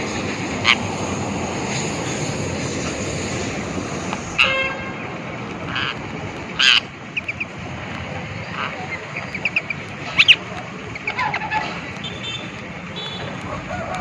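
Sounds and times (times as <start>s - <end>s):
noisy background rumble: 0.0s - 14.0s
parrot squawking: 0.6s - 0.9s, 4.4s - 4.6s, 5.6s - 7.5s, 8.4s - 10.4s, 11.0s - 11.8s.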